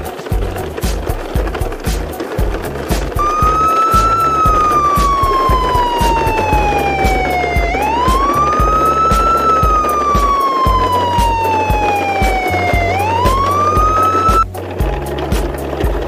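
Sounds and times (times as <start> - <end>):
background music with drum beat: 0.0 - 16.0
siren wailing: 3.2 - 14.5.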